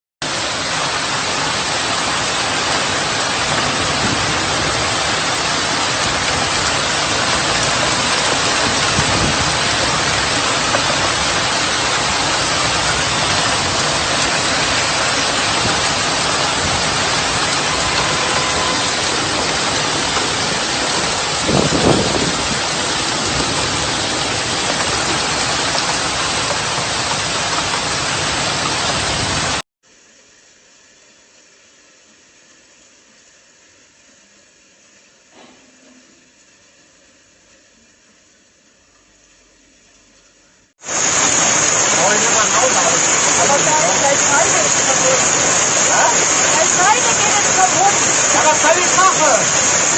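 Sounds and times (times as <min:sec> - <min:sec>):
heavy rain downpour: 0:00.2 - 0:29.6, 0:40.8 - 0:49.9
low thunder rumble: 0:02.0 - 0:29.6.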